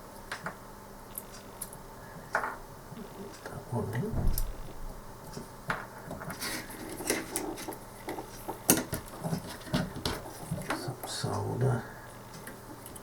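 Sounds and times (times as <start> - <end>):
small tools clicking and tapping: 5.3 - 10.8.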